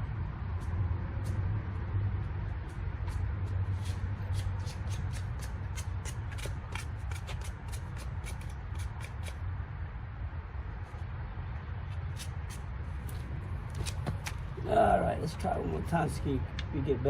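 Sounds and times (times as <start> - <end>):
steady low hum: 0.0 - 17.0
sandpaper scratching metal: 3.8 - 9.4.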